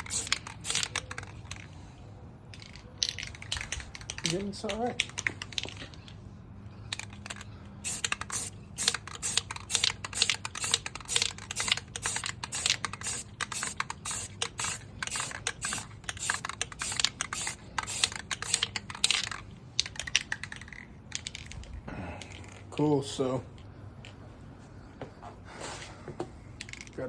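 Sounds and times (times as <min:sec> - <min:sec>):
spray can hissing bursts: 0:00.0 - 0:01.3, 0:07.8 - 0:18.9.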